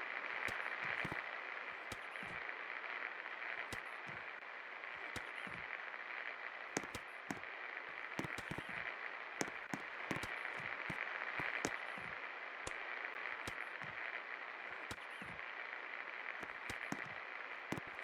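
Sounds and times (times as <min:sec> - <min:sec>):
sharp clicks: 0:00.4 - 0:02.5, 0:05.0 - 0:05.6, 0:06.8 - 0:14.0, 0:16.4 - 0:18.0.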